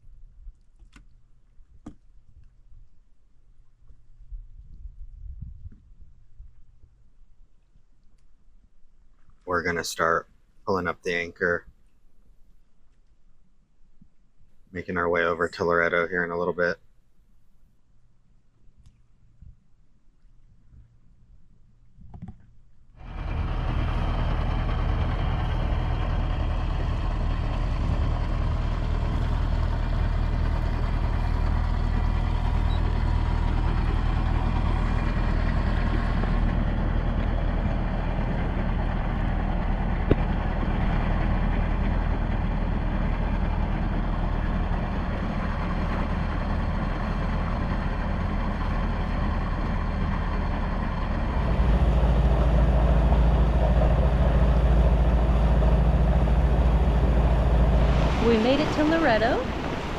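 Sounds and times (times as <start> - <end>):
diesel engine drone: 23.0 - 59.9.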